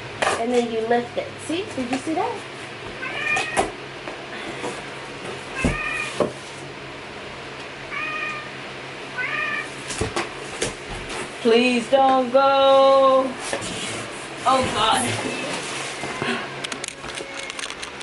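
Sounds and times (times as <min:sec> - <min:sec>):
cat meowing: 0:03.0 - 0:03.7, 0:05.5 - 0:06.2, 0:07.9 - 0:08.5, 0:09.2 - 0:09.8.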